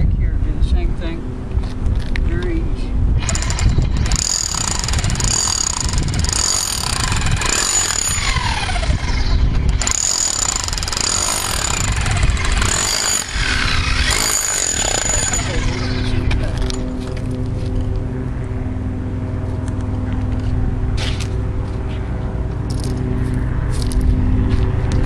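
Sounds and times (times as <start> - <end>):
power chipping hammer on concrete: 3.2 - 17.0.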